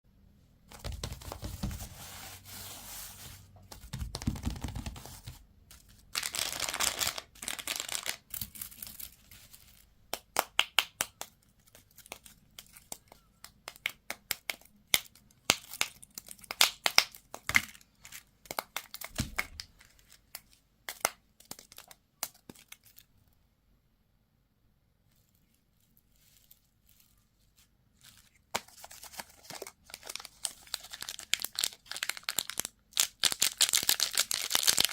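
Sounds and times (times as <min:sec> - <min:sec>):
packaging tearing and crinkling: 0:28.6 - 0:34.9.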